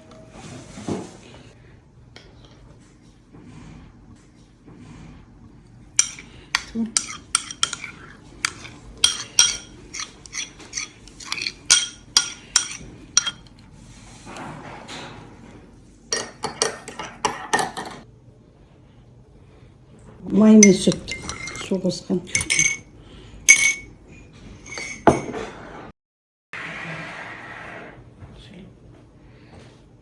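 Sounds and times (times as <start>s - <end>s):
utensil clinking against dishes: 5.9s - 13.6s, 16.1s - 18.0s, 20.4s - 22.9s, 23.5s - 23.9s, 24.6s - 25.4s.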